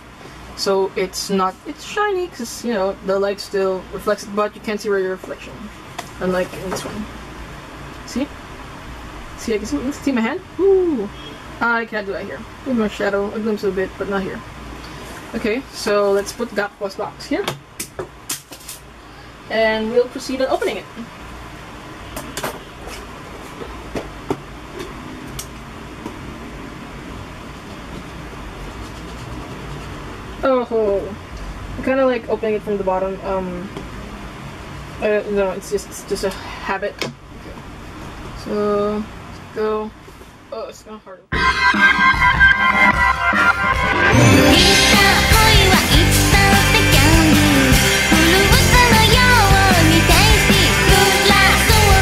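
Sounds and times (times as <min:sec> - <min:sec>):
rock music with singing and guitar: 0:41.4 - 0:52.0.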